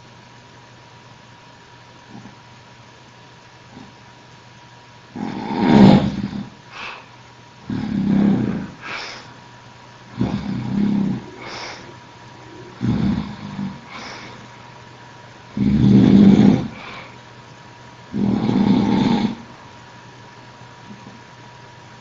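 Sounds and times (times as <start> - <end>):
man snoring: 5.2 - 7.0, 7.6 - 9.3, 10.1 - 14.5, 15.5 - 17.2, 18.1 - 19.5
soft breath out: 6.7 - 7.1.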